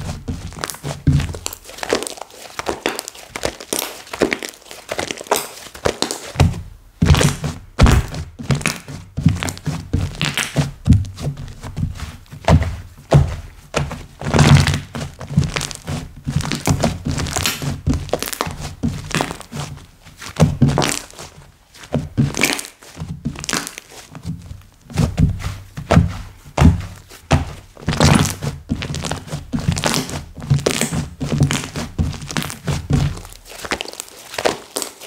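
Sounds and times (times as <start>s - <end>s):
slime squishing and crackling: 0.0s - 35.0s
soft low thuds: 6.4s - 19.2s, 24.2s - 33.4s.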